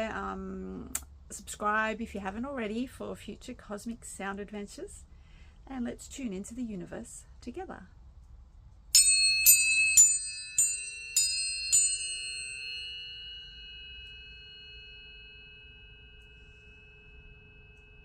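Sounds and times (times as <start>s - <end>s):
tuning forks ringing pure tones: 8.9s - 18.0s
tuning fork metallic taps: 12.6s - 18.0s.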